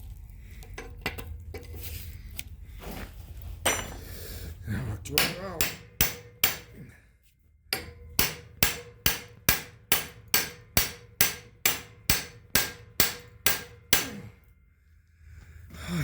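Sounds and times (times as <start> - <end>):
hammer blows on metal: 5.2 - 6.8, 7.8 - 14.4.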